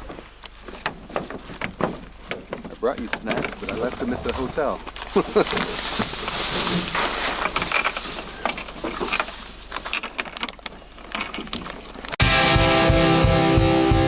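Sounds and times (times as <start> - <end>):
rustling: 0.0 - 12.2
small clicks and clinks: 7.6 - 12.2
rock music with electric guitar: 12.2 - 14.0.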